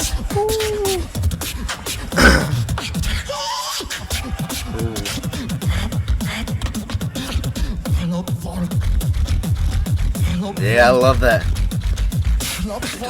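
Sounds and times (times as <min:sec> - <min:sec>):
beatboxing: 0:00.1 - 0:01.4, 0:02.2 - 0:03.0, 0:04.6 - 0:09.4
held vocal tone: 0:02.2 - 0:02.8, 0:04.6 - 0:05.4, 0:10.6 - 0:11.4
rising pitched vocal sound: 0:04.7 - 0:05.2.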